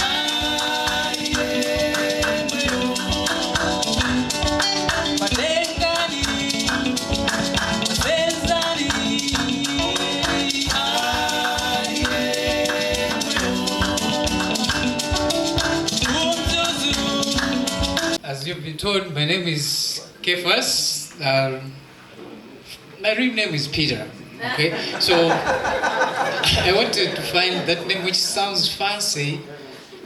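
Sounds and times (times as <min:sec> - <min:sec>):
song with singing over a beat: 0:00.0 - 0:18.2.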